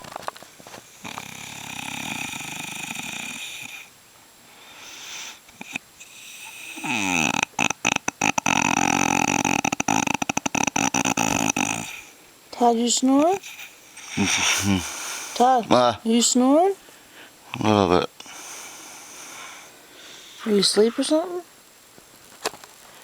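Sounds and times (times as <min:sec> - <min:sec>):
man snoring: 0:01.0 - 0:03.9, 0:04.8 - 0:12.2, 0:14.0 - 0:15.9.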